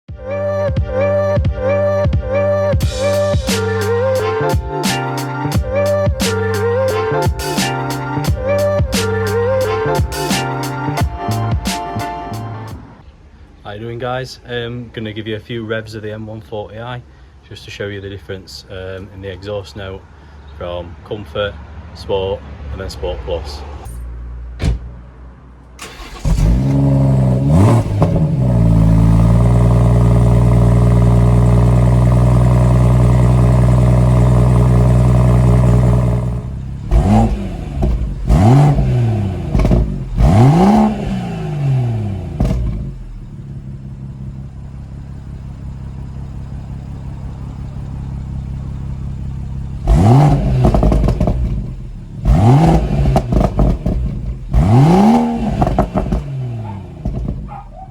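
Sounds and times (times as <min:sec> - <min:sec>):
car engine revving: 0:24.7 - 0:57.9.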